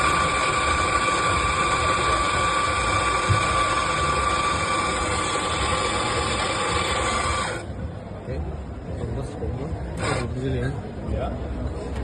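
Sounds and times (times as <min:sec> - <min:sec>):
coffee grinder motor whining: 0:00.0 - 0:07.7.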